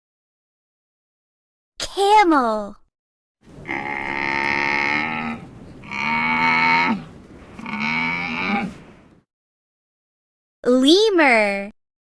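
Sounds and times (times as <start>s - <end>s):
camel bellowing calls: 3.5s - 9.2s.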